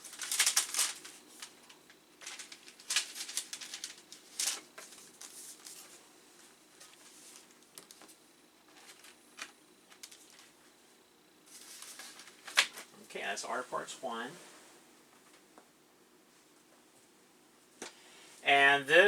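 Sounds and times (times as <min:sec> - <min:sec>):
plastic packaging crinkling: 0:00.0 - 0:06.0, 0:06.8 - 0:10.6, 0:11.5 - 0:12.9.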